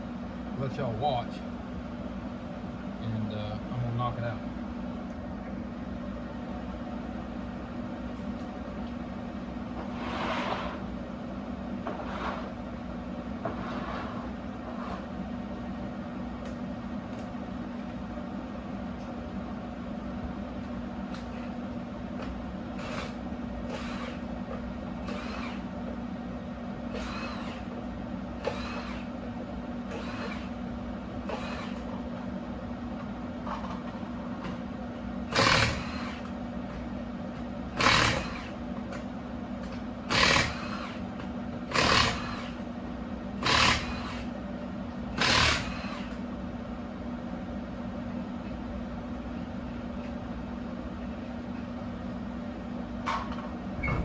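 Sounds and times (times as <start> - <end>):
steady hum: 0.0 - 54.0
impact wrench bursts: 22.8 - 24.2, 25.0 - 25.6, 26.9 - 27.7, 28.4 - 29.1, 29.9 - 30.5, 31.3 - 31.8, 35.3 - 36.2, 37.8 - 38.6, 40.1 - 41.0, 41.7 - 42.6, 43.4 - 44.3, 45.2 - 46.1.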